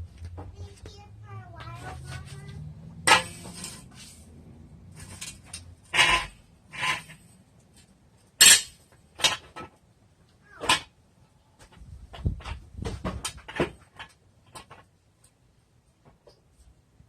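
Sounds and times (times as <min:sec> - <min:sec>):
metallic clinks and scrapes: 0:01.8 - 0:09.7.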